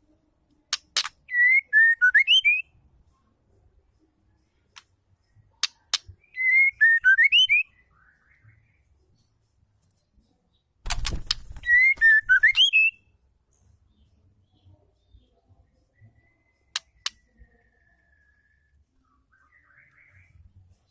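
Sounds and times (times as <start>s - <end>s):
bird clicks: 0.7s - 1.2s, 5.6s - 6.1s, 10.9s - 12.6s, 16.7s - 17.2s
bird whistled phrase: 6.3s - 7.7s, 11.6s - 13.0s.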